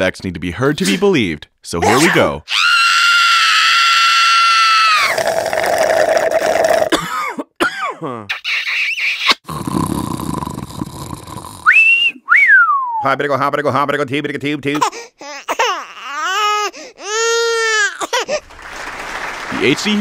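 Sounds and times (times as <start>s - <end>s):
high-pitched scream: 1.8s - 5.2s.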